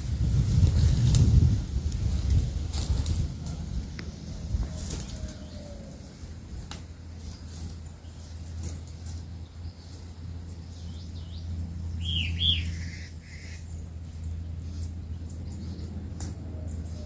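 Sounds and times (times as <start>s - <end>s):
steady low hum: 0.0s - 17.0s
bird calling: 4.6s - 6.3s, 9.4s - 17.0s.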